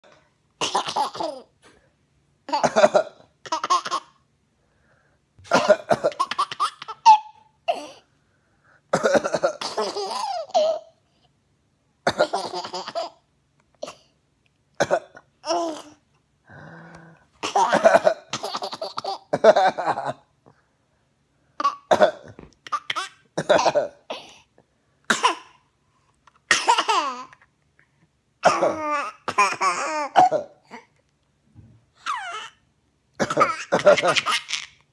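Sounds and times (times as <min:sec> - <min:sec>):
person coughing: 0:02.5 - 0:03.2, 0:05.4 - 0:06.4, 0:08.9 - 0:10.1, 0:14.8 - 0:15.3, 0:21.9 - 0:22.5, 0:23.4 - 0:24.5, 0:28.4 - 0:30.8, 0:33.2 - 0:34.4.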